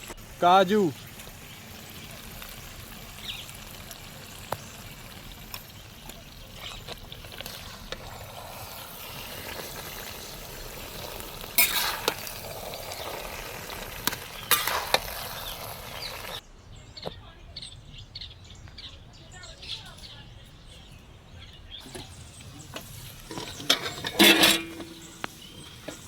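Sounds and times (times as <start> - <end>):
food sizzling in a pan: 0.0 - 16.4, 21.8 - 26.0
spatula scraping pan: 6.6 - 16.4, 21.8 - 26.0.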